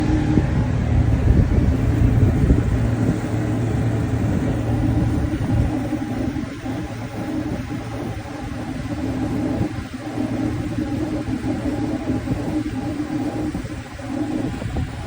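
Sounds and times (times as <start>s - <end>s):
heavy engine running: 0.0s - 15.0s.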